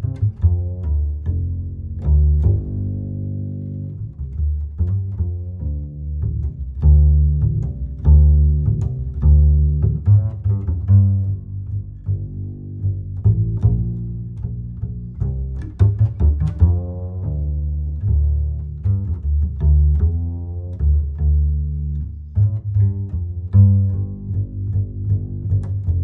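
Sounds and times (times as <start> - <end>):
low strings plucked and bowed: 0.0 - 26.0.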